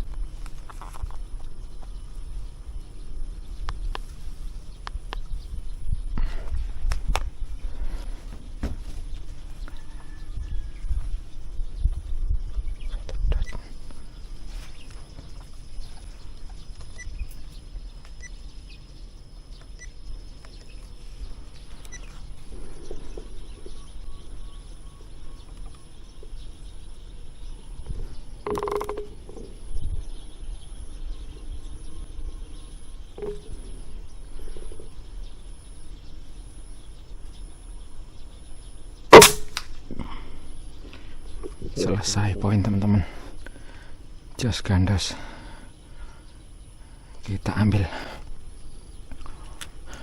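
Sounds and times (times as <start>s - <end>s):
faint bird calls: 0.0s - 50.0s
wind rumbling on microphone: 0.0s - 50.0s
suppressed air rifle shot: 39.1s - 39.8s.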